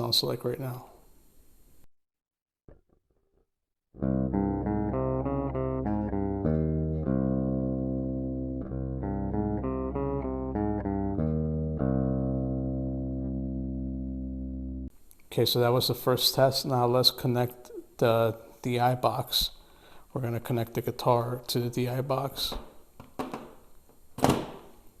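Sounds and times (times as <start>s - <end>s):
electric guitar picked notes: 4.0s - 14.9s.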